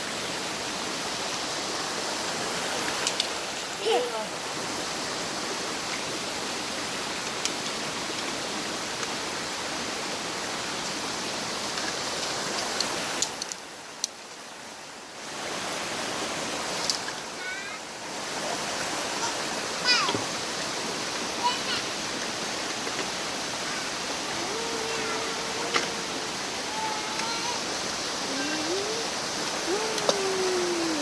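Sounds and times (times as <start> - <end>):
stream rushing over rocks: 0.0 - 31.0.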